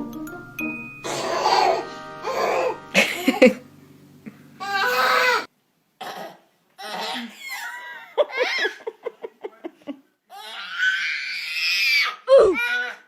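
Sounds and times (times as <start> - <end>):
background music: 0.0 - 3.8
child crying: 1.1 - 3.5, 4.6 - 5.5, 10.3 - 13.0
small child vocalizing: 4.6 - 5.5, 12.3 - 13.0
child coughing: 4.8 - 7.4.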